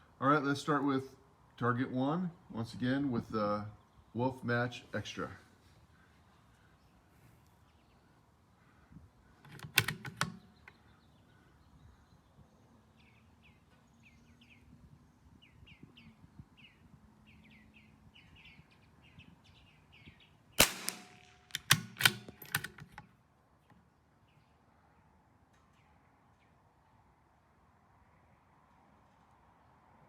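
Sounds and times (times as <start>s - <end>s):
rifle bolt metallic clicks: 9.4s - 10.8s, 20.6s - 23.1s
rifle shot: 20.6s - 23.0s.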